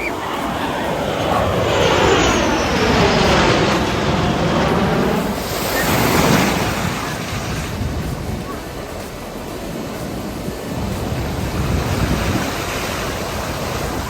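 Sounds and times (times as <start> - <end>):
jet aircraft flying past: 0.0 - 14.0
loud rushing noise: 0.0 - 14.0.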